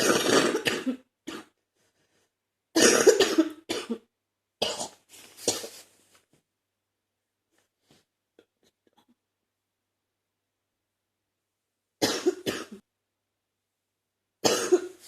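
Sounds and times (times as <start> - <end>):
woman coughing wet chesty cough: 0.0 - 1.6, 2.8 - 5.7, 12.0 - 12.8, 14.4 - 15.0.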